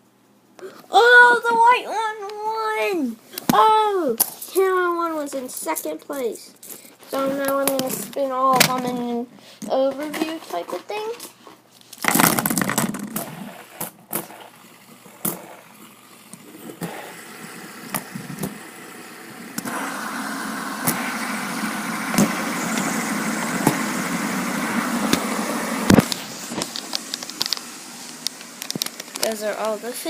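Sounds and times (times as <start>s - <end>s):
fidget spinners clicking and knocking: 3.6s - 9.1s, 12.0s - 30.0s
fidget spinners whirring: 3.6s - 11.4s, 12.0s - 30.0s.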